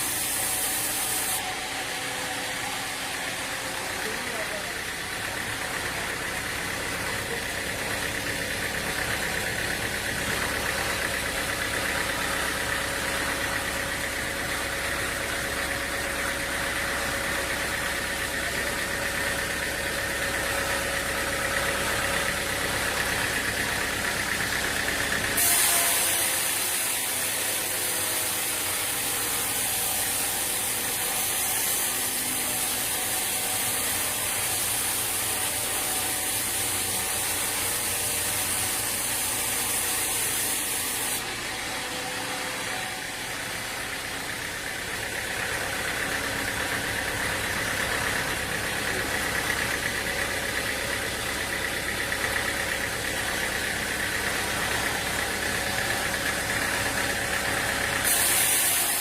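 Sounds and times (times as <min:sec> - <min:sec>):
machinery rumble: 0:01.6 - 0:25.4
bright hiss: 0:58.1 - 0:59.0.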